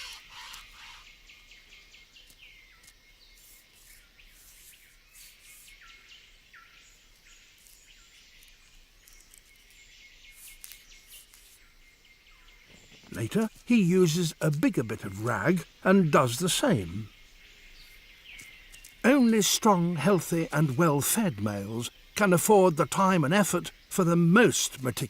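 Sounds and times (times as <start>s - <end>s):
bird calls sliding downward: 0.0s - 1.3s
soft hiss: 0.0s - 22.1s.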